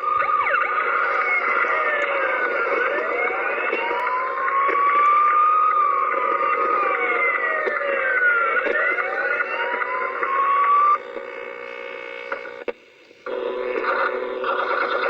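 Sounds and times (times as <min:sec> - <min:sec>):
electronic siren-like wailing: 0:00.0 - 0:11.0.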